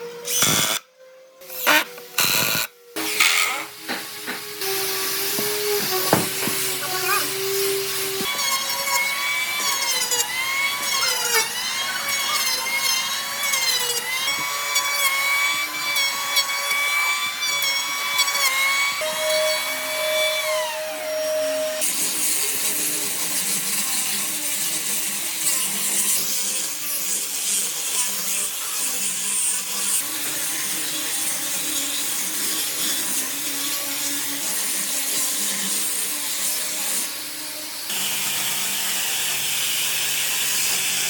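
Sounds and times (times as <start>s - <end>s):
power tool motor whine: 0.2s - 24.9s, 37.9s - 41.0s.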